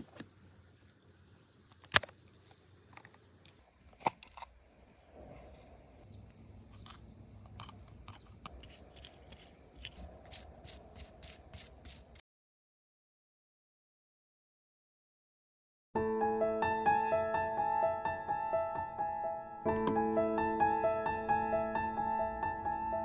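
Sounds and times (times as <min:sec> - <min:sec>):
high insect-like chirring: 0:00.0 - 0:12.2
quick small ticks and scrapes: 0:06.7 - 0:12.2.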